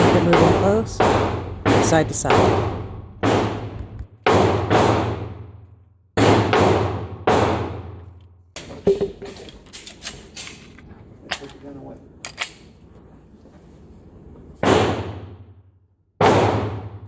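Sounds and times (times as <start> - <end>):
pistol shots echoing: 0.0 - 5.5, 6.2 - 8.0, 16.2 - 17.0.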